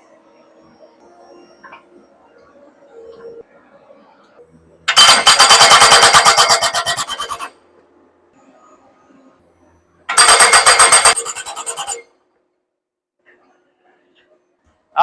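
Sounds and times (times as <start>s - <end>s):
hydraulic post driver hammering: 4.9s - 7.4s, 10.1s - 12.0s.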